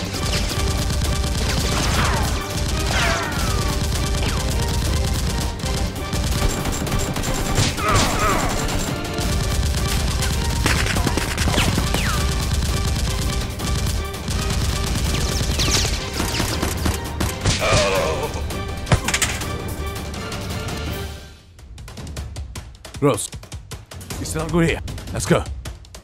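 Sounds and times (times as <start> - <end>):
gunfire volleys: 0.0 - 17.9
background music: 0.0 - 26.0.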